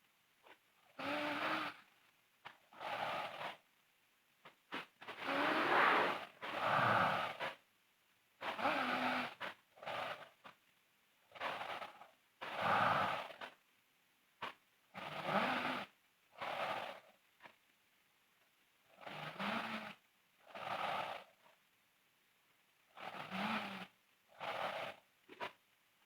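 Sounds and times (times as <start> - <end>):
girl snoring loudly: 1.0 - 1.8, 2.8 - 3.6, 5.2 - 7.4, 8.5 - 10.2, 11.4 - 13.4, 15.0 - 17.1, 18.9 - 21.4, 23.0 - 25.0.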